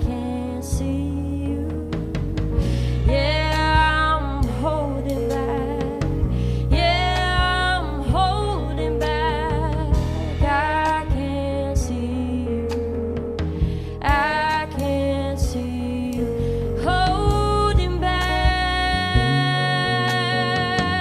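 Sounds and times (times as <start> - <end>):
bass guitar: 0.0 - 21.0
person singing wordless melody: 14.0 - 21.0.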